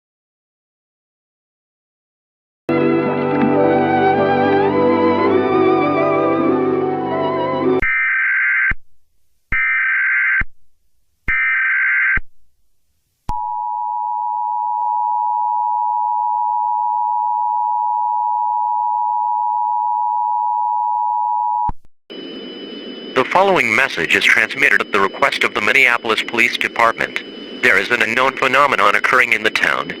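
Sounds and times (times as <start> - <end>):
two-tone attention signal: 22.2 - 29.9.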